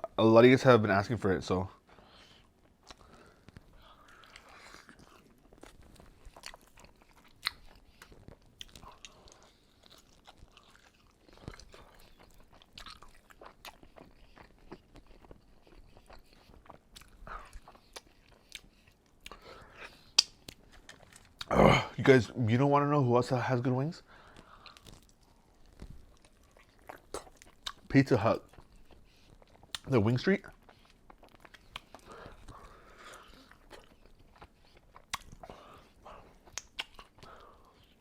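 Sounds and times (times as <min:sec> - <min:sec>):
person chewing: 0:01.9 - 0:21.9, 0:24.1 - 0:38.0
wet mouth clicks: 0:20.0 - 0:20.5, 0:36.4 - 0:37.3.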